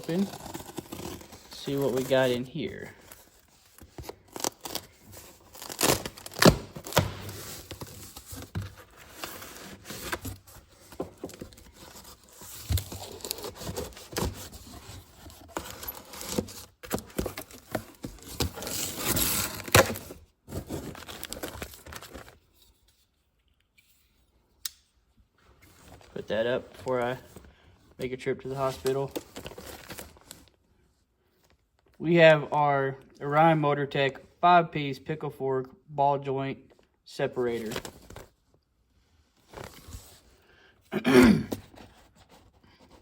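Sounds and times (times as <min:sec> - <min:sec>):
cardboard box being opened: 0:00.0 - 0:22.5, 0:28.7 - 0:30.5.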